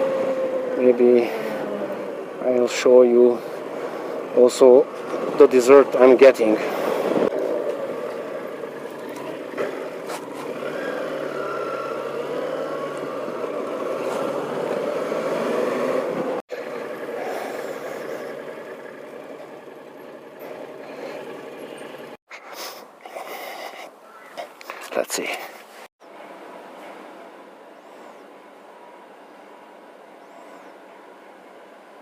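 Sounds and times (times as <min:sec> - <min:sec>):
motorcycle engine running: 0:00.0 - 0:22.2
riding wind noise: 0:00.0 - 0:22.2.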